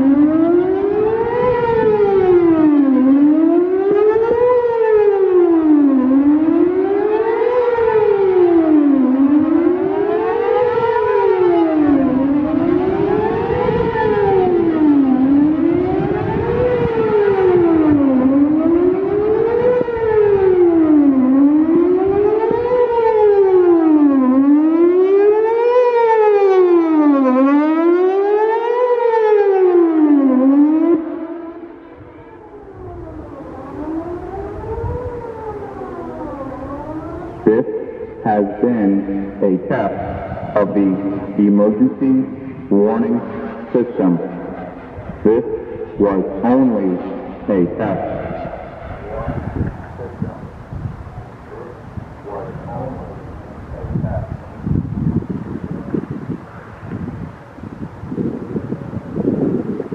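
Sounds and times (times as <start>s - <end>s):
warning siren wailing: 0.0s - 59.9s.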